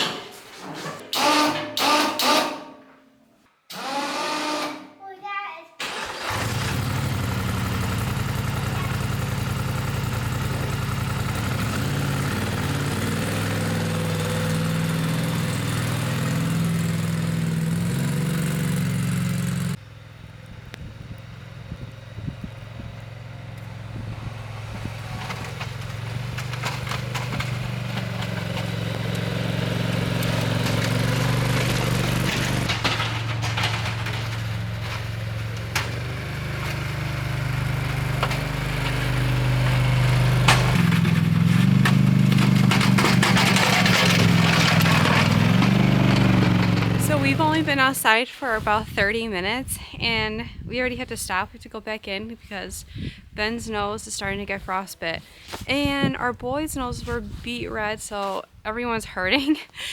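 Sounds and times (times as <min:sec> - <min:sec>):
engine running: 0:05.8 - 0:49.7.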